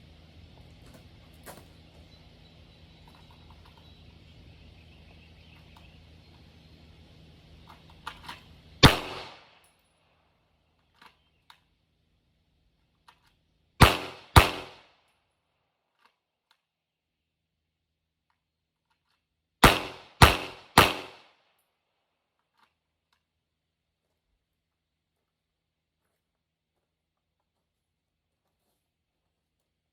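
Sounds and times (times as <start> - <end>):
pistol shots with echo: 8.8 - 9.6, 13.8 - 14.9, 19.6 - 21.4.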